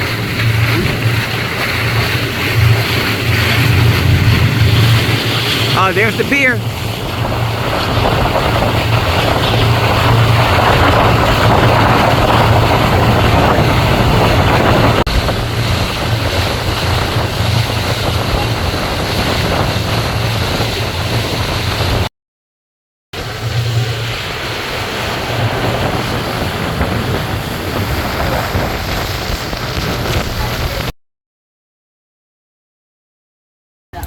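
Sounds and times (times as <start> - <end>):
outboard motor running: 0.0 - 22.1, 23.2 - 30.9
rush of wind and water: 0.0 - 22.1, 23.2 - 30.9.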